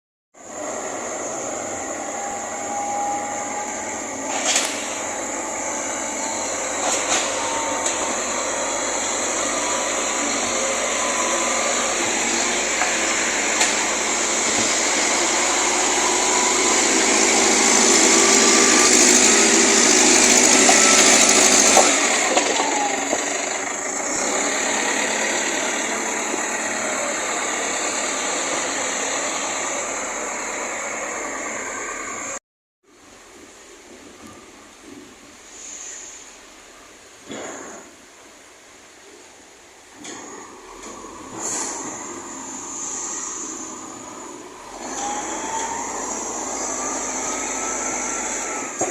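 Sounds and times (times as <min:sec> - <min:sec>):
diesel engine running: 0:00.4 - 0:32.4, 0:40.0 - 0:48.9
steady mechanical noise: 0:00.4 - 0:32.4, 0:35.6 - 0:48.9.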